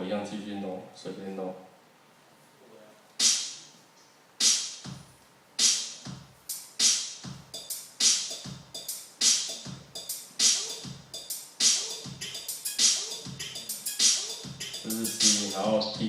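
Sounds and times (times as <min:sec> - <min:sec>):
electronic drum machine beat: 0:04.4 - 0:16.0.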